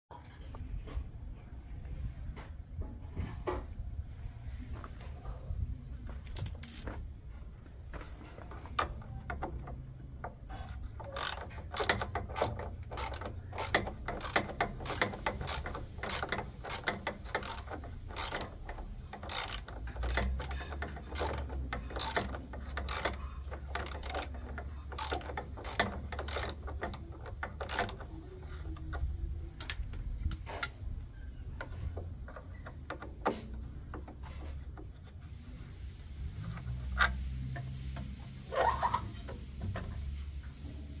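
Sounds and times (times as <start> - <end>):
tools and parts clattering: 6.2 - 35.3.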